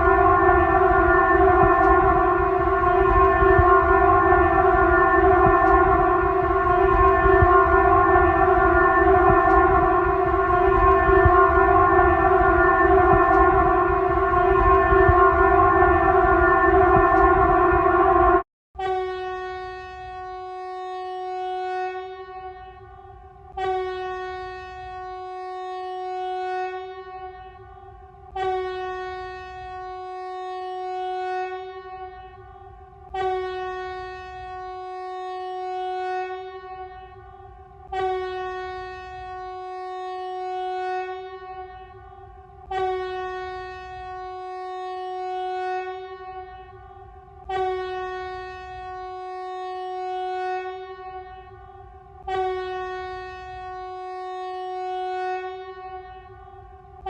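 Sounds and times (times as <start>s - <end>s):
emergency warning alarm tone: 0.0s - 18.4s.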